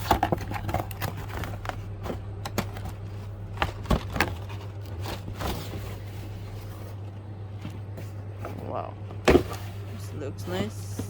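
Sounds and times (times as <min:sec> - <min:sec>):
cardboard box scraping and rustling: 0:00.0 - 0:07.2
steady low hum: 0:00.0 - 0:11.0.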